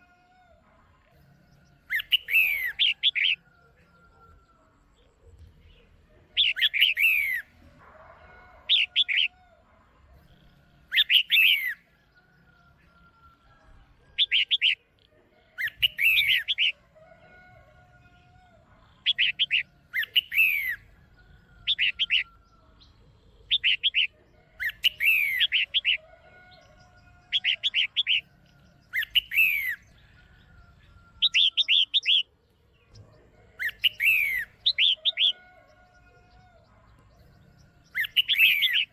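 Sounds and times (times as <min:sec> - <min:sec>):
bird calling with whistles: 0:01.9 - 0:03.4, 0:06.4 - 0:07.5, 0:10.9 - 0:11.8, 0:15.6 - 0:16.7, 0:19.1 - 0:20.8, 0:23.5 - 0:26.0, 0:29.0 - 0:29.8, 0:33.6 - 0:35.4, 0:38.0 - 0:38.9.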